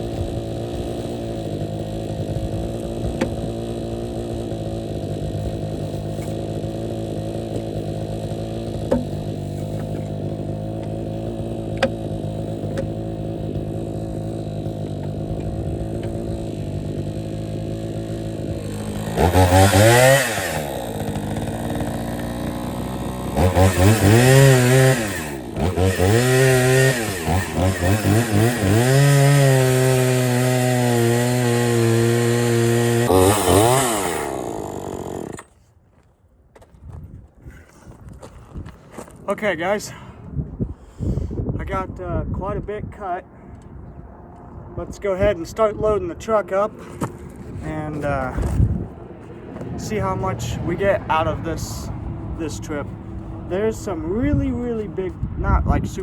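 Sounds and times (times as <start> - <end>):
chainsaw cutting logs: 0.0 - 35.6, 46.2 - 55.1.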